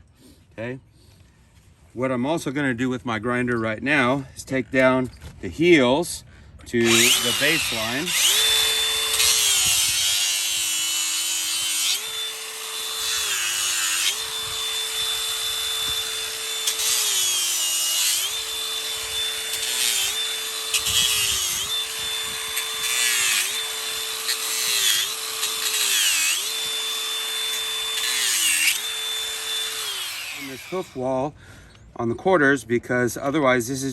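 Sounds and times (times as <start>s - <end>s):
disc rasping on hoof: 6.8s - 31.0s
electric grinder motor whine: 6.8s - 31.0s.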